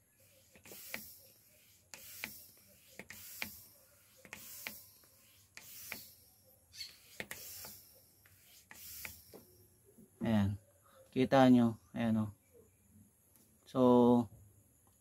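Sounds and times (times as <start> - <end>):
hand smoke pump strokes: 0.0 - 9.6
pump squeak: 0.2 - 9.6.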